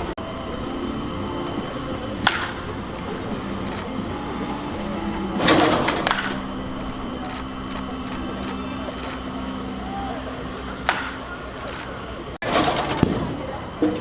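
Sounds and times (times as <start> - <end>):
baseball bat cracks: 2.2 - 2.7, 5.5 - 6.4, 10.8 - 11.9.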